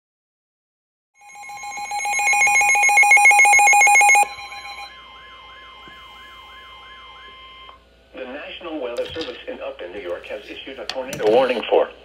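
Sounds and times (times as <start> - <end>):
steady alert tone: 1.2 - 5.0
rapid electronic warble alert: 1.2 - 7.2.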